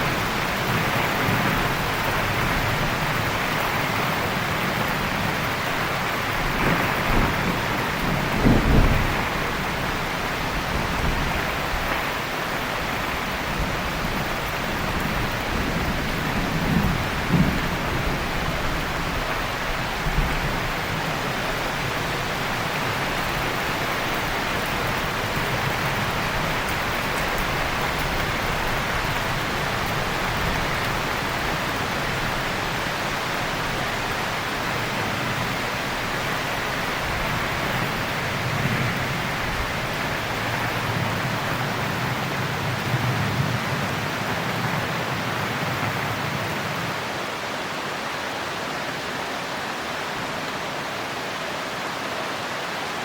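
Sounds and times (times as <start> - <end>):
heavy rain falling: 0.0 - 53.0
thunder rumbling: 6.3 - 11.9, 13.6 - 22.0.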